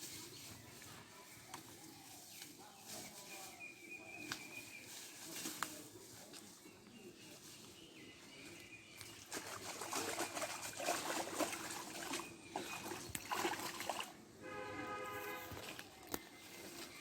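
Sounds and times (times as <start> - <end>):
water splashing and trickling: 8.5 - 17.0.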